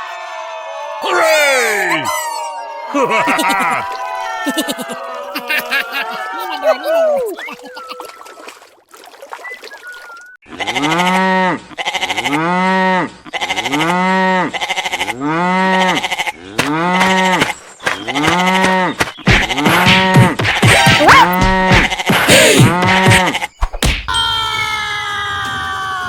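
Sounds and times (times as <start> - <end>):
drawn-out animal call: 10.5 - 19.0.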